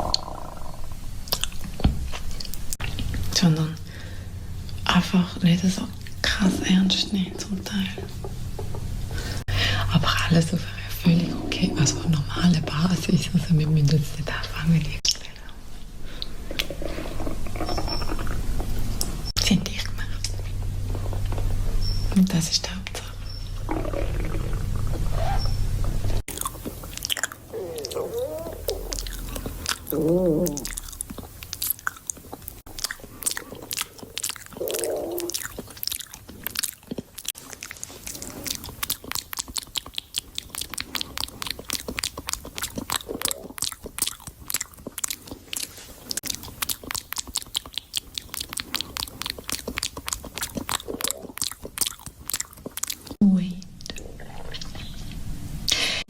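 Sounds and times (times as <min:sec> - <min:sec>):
chewing crunchy food: 0:00.0 - 0:03.3, 0:26.2 - 0:53.2
short wavering growls: 0:23.6 - 0:25.5, 0:27.4 - 0:30.8, 0:33.4 - 0:35.4.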